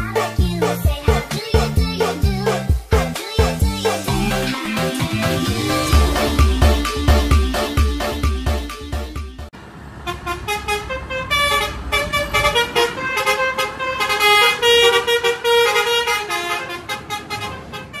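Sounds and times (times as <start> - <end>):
vehicle horns honking: 10.0 - 18.0.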